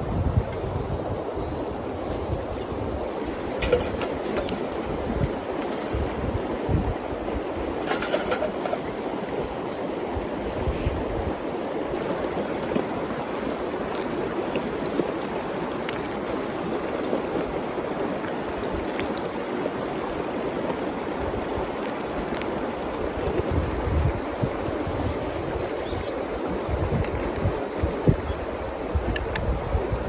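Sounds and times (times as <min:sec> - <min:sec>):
river water rushing: 0:03.1 - 0:23.5.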